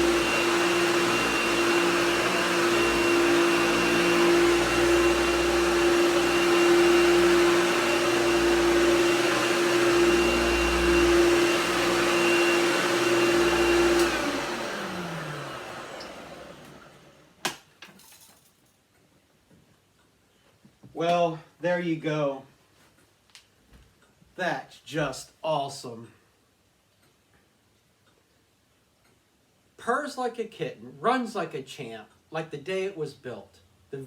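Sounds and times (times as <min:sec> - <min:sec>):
vacuum cleaner humming: 0:00.0 - 0:17.4.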